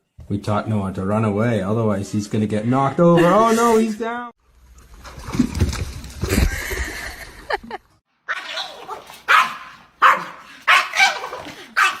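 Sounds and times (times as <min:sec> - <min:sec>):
dog barking: 0:08.3 - 0:12.0.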